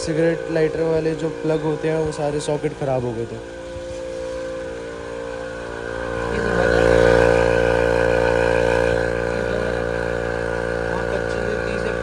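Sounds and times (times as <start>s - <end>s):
air pump motor hum: 0.0s - 12.0s.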